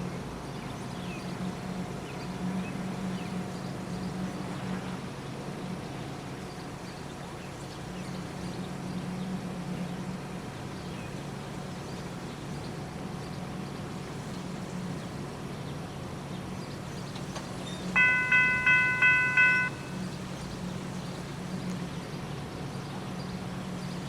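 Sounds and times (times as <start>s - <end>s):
low engine-like hum: 0.0s - 24.0s
faint short high chirps: 18.0s - 20.0s.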